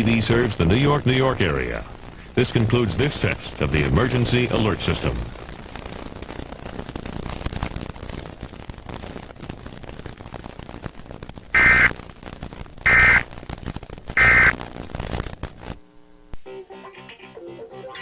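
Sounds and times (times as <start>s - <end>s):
broadcast hiss: 0.0s - 18.0s
buzzing data bursts: 11.5s - 12.0s, 12.8s - 13.3s, 14.2s - 14.6s.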